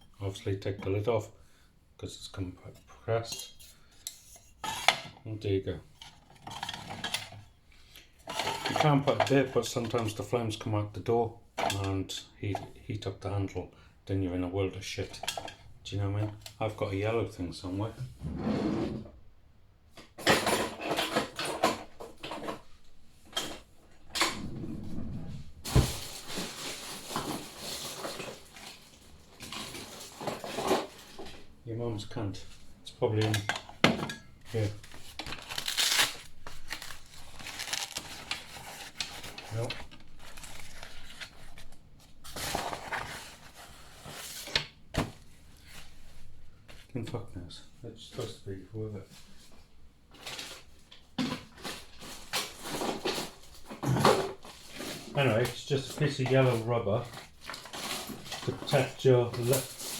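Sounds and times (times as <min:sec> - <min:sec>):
hard objects clattering: 0:05.9 - 0:07.6, 0:08.2 - 0:10.1, 0:20.0 - 0:31.6, 0:32.4 - 0:45.2, 0:50.2 - 0:59.9
rustling: 0:24.8 - 0:32.8, 0:34.4 - 0:46.9
rustling of gear: 0:34.5 - 0:44.4.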